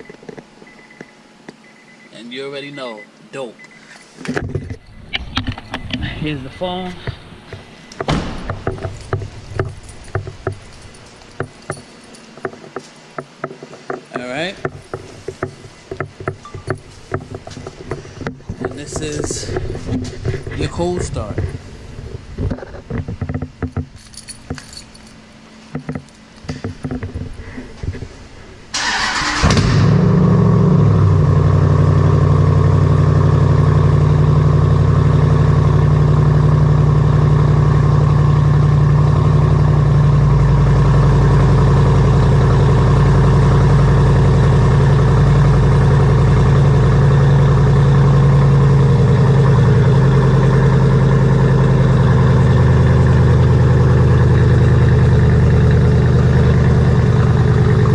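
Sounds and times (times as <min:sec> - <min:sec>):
car engine idling loudly: 0:28.9 - 0:57.9.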